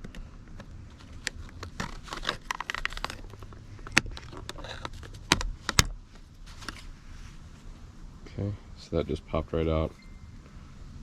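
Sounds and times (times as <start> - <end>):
plastic scraping and crackling: 0.0 - 6.9.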